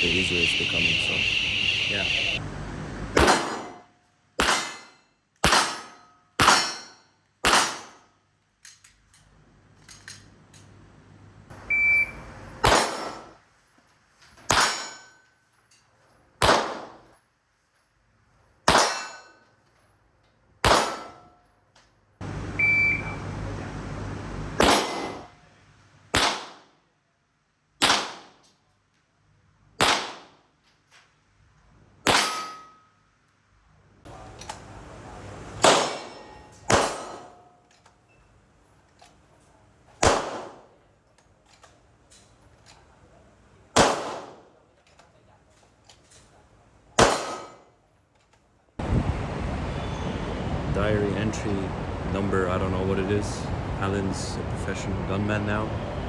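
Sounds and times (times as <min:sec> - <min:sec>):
gunshots: 0:03.2 - 0:03.8, 0:04.4 - 0:04.8, 0:12.6 - 0:13.2, 0:16.4 - 0:17.0, 0:20.6 - 0:21.1, 0:24.6 - 0:25.3, 0:26.2 - 0:26.6, 0:27.8 - 0:28.3, 0:29.8 - 0:30.3, 0:35.6 - 0:36.1, 0:36.7 - 0:37.3, 0:40.0 - 0:40.7, 0:43.8 - 0:44.4, 0:47.0 - 0:47.6.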